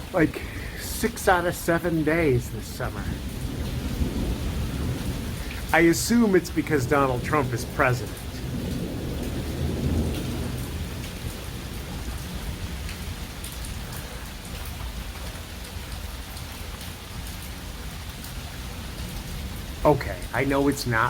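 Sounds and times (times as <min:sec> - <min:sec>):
thunder rumble: 0:00.0 - 0:14.4
steady rain: 0:00.0 - 0:21.0.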